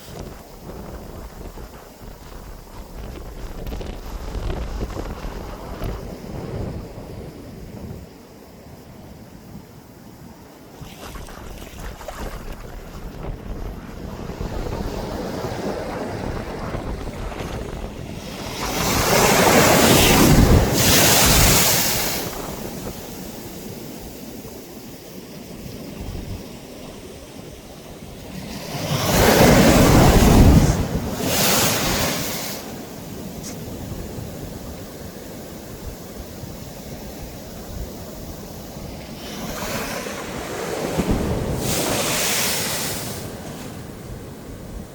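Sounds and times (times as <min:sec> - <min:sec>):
soft surf: 0:00.0 - 0:25.4, 0:28.4 - 0:44.9
wind on microphone: 0:00.0 - 0:44.9
ocean waves crashing: 0:10.3 - 0:25.4, 0:27.3 - 0:44.9.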